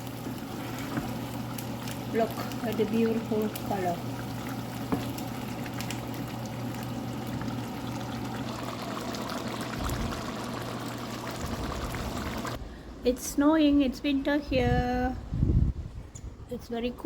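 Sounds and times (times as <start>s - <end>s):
food sizzling in oil: 0.0s - 12.6s.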